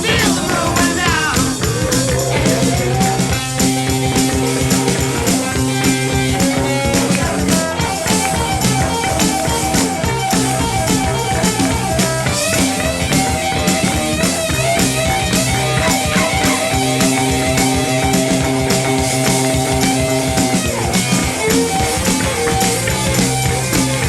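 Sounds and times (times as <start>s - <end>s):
drum kit beat: 0.0s - 24.0s
electric guitar playing: 0.0s - 24.0s.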